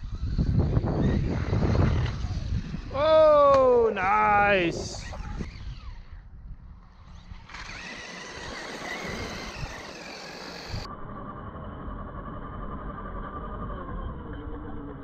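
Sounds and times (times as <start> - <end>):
electric motor whining: 0.0 - 3.0, 4.7 - 15.0
tyres churning over sand: 7.1 - 15.0.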